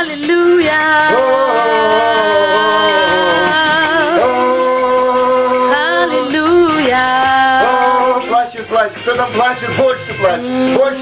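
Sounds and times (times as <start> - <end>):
person singing long notes: 0.0 - 8.3, 10.3 - 11.0
instrumental accompaniment: 0.0 - 11.0.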